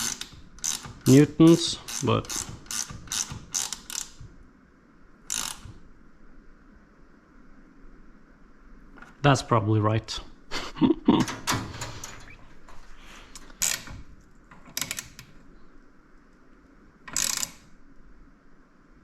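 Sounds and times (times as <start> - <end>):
ratchet wrench clicking: 0.0 - 4.2, 5.3 - 5.8, 13.4 - 14.0, 14.6 - 15.3, 17.1 - 17.7.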